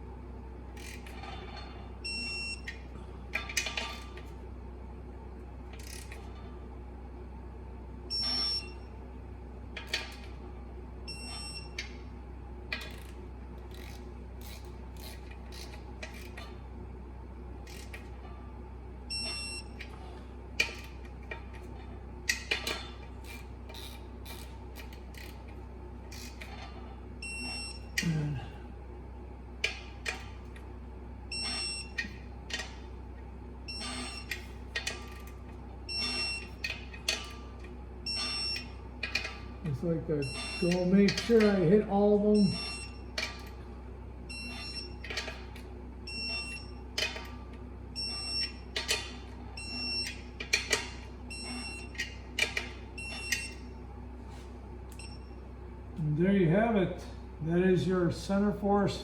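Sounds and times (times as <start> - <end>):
steady low hum: 0.0 - 59.0
torque wrench beeping: 2.0 - 2.8, 8.1 - 8.9, 11.1 - 12.0, 17.6 - 18.1, 19.1 - 19.9, 22.3 - 25.5, 26.1 - 28.2, 31.3 - 32.8, 33.7 - 39.5, 40.2 - 43.5, 44.3 - 47.4, 48.0 - 53.8, 54.9 - 55.4.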